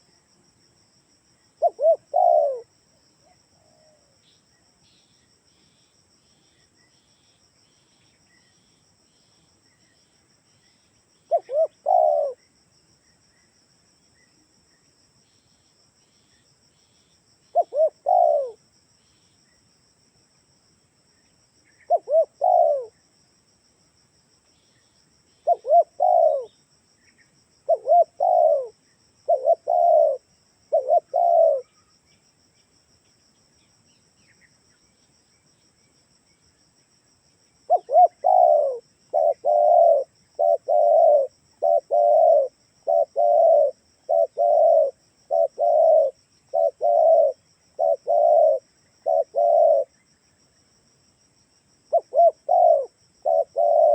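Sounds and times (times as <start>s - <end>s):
dove cooing: 1.6s - 4.2s, 11.3s - 12.4s, 17.5s - 18.6s, 21.9s - 23.0s, 25.4s - 26.6s, 27.7s - 31.8s, 37.7s - 49.9s, 51.9s - 53.9s.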